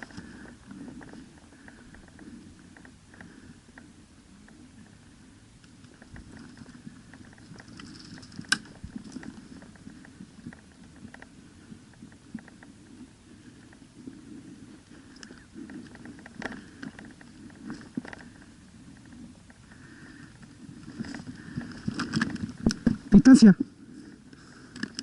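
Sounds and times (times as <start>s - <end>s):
rustling and crackling: 0.0s - 25.0s.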